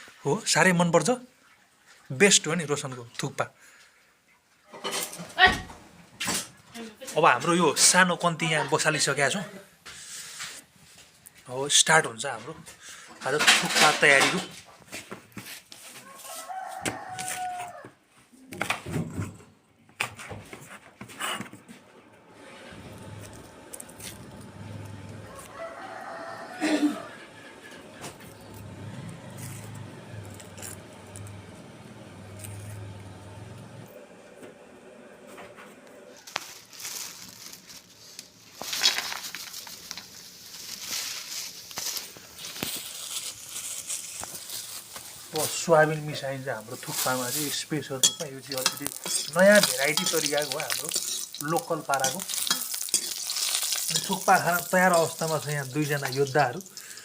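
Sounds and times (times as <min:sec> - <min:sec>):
rustling and crinkling handling: 0:36.1 - 0:56.8.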